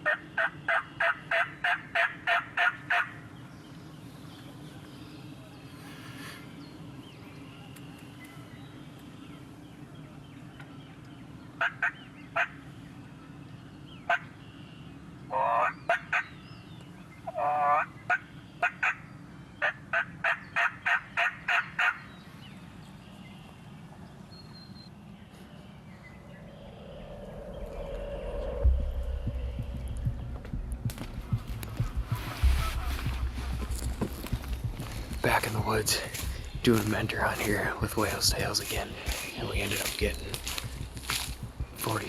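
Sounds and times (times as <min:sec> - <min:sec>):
sharp turkey calls: 0:00.0 - 0:03.2, 0:11.6 - 0:12.6, 0:15.3 - 0:16.4, 0:17.3 - 0:22.1, 0:32.2 - 0:42.0
turkey gobbling: 0:00.0 - 0:03.2, 0:15.3 - 0:16.3, 0:19.6 - 0:22.0
low rumble: 0:25.2 - 0:42.0.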